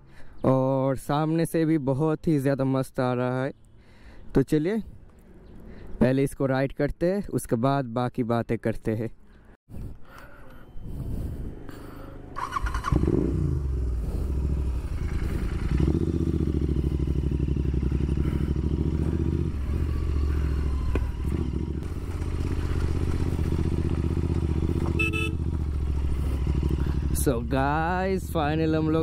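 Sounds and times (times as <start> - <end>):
motorcycle engine revving: 12.4 - 29.0.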